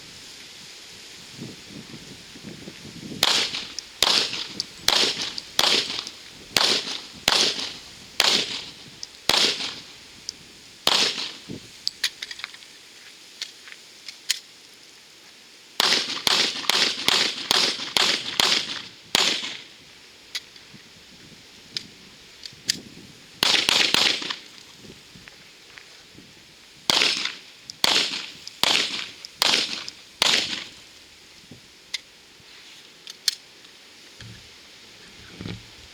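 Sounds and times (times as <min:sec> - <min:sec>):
pistol shots: 0:03.2 - 0:09.9, 0:10.9 - 0:11.4, 0:15.8 - 0:19.6, 0:23.4 - 0:24.4, 0:26.9 - 0:30.8
light magazine clicks: 0:03.2 - 0:12.6, 0:33.1 - 0:33.4.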